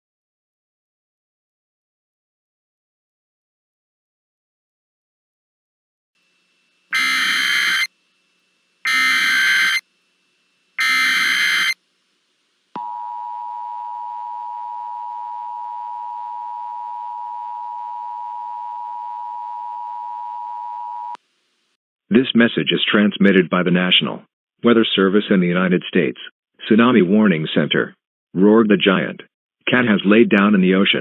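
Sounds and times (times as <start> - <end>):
screeching data bursts: 6.9 - 7.9, 8.8 - 9.8, 10.8 - 11.8
two-tone alert signal: 7.0 - 7.9, 8.9 - 9.8, 10.8 - 11.8.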